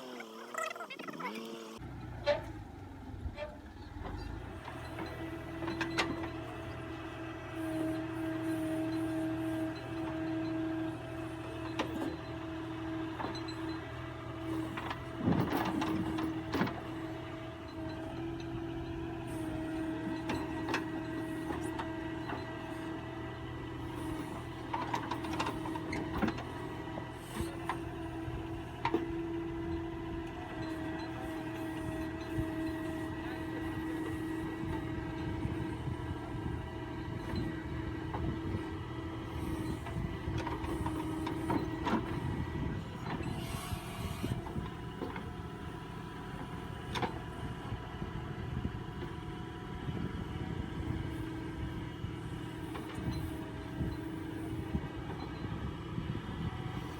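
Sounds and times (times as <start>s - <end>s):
backhoe engine whining: 0.0s - 56.9s.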